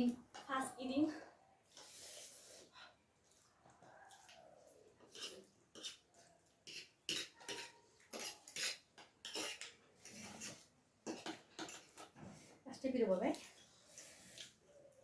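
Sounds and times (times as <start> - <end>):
cutlery clinking against plates: 6.6 - 12.2.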